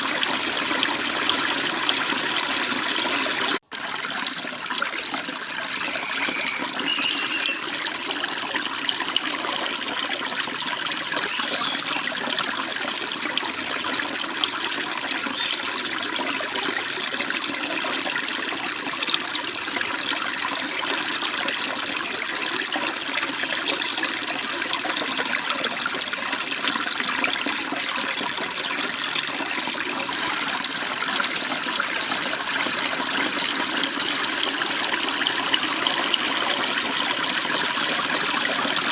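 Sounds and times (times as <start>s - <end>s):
stream babbling: 1.7s - 21.7s
faint bird chirps: 5.6s - 7.8s, 11.2s - 11.9s, 15.3s - 15.6s.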